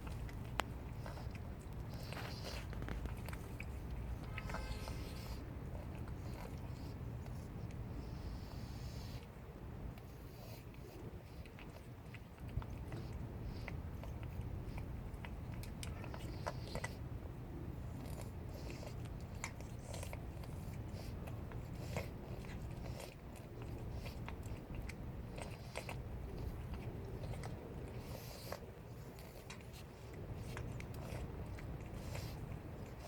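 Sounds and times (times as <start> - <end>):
cat crunching food: 0.0 - 33.0.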